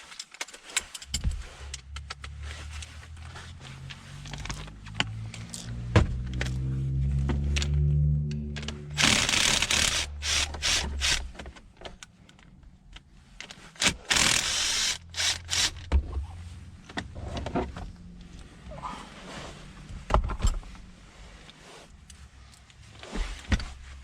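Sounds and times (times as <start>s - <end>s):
impact gun bursts: 9.0s - 11.2s.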